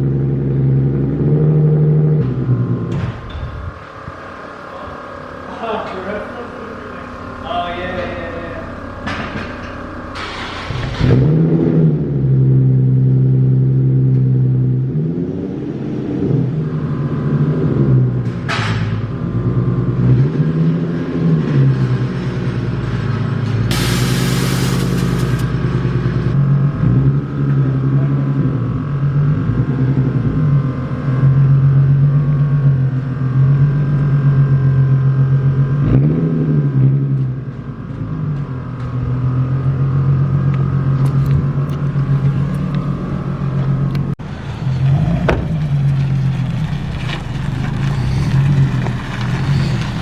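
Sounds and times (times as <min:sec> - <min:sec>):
car engine driving: 0:00.0 - 0:50.0.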